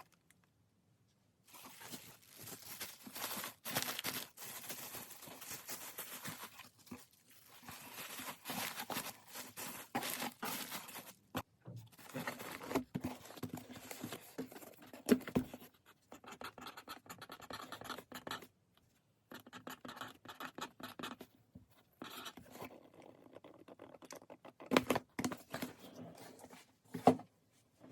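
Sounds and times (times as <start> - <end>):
packing materials rustling: 1.5 - 11.4, 12.0 - 15.2.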